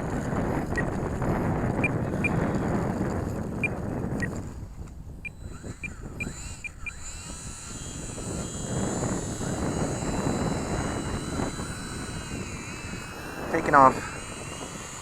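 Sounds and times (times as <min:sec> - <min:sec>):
electric motors whining: 0:00.0 - 0:15.0.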